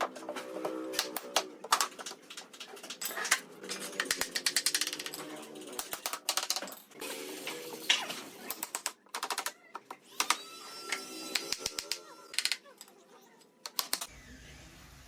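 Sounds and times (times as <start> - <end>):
sharp taps and clicks on wood: 13.7 - 14.1.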